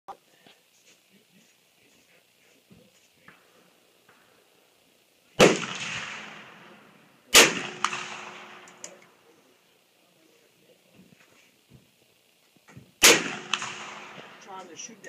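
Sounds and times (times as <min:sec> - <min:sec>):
gunshots with echo: 0:05.4 - 0:08.8, 0:13.0 - 0:14.5.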